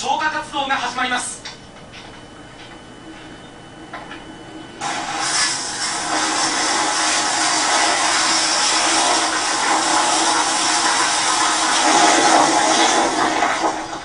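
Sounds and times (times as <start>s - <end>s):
tsunami water rushing: 4.8s - 13.8s.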